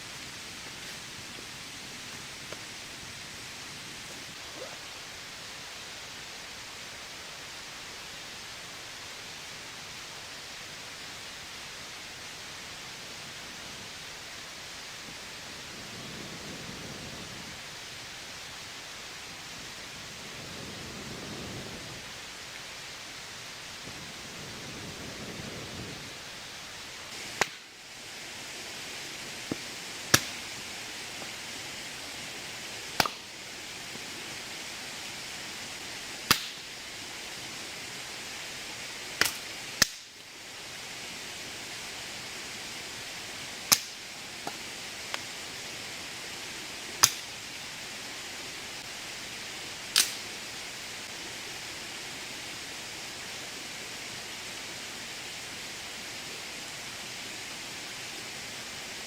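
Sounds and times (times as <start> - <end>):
heavy rain falling: 0.0 - 59.0
sharp pops: 27.2 - 27.7, 29.4 - 30.6, 33.0 - 33.3, 36.2 - 36.7, 39.2 - 40.1, 43.7 - 45.2, 47.0 - 47.3, 49.9 - 50.3.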